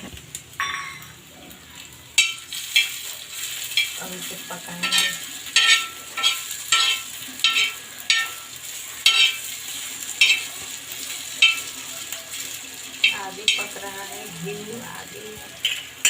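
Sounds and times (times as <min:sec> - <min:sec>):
ginger sizzling in a pan: 0:00.0 - 0:16.0
spatula scraping a pan: 0:02.2 - 0:14.7.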